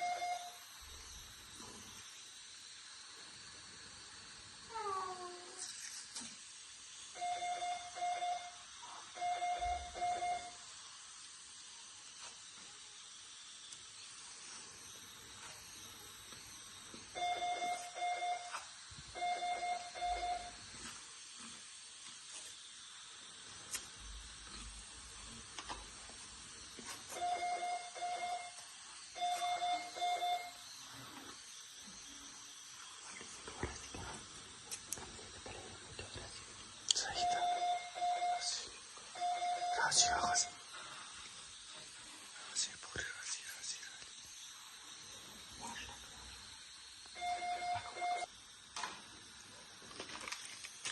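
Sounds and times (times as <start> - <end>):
medical alarm beeping: 0.0 - 0.7, 7.2 - 10.6, 17.1 - 20.6, 27.1 - 30.7, 37.2 - 40.8, 47.2 - 48.3
faint hiss: 10.5 - 17.2, 30.5 - 37.6, 38.5 - 47.3.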